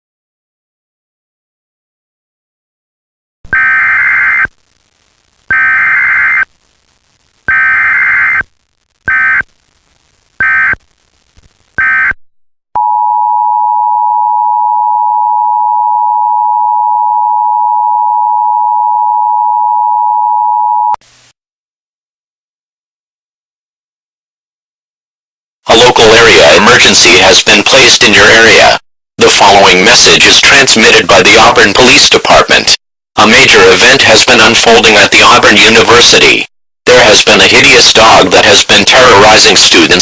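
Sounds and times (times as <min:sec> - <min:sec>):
digital data bursts: 0:05.5 - 0:06.5.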